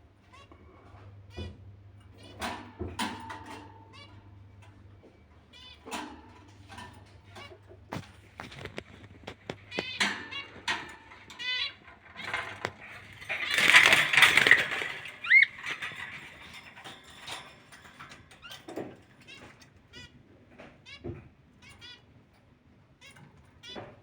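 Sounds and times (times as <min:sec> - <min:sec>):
cage birds chirping and trilling: 0:00.0 - 0:24.0
massed bird squawking: 0:09.8 - 0:17.2.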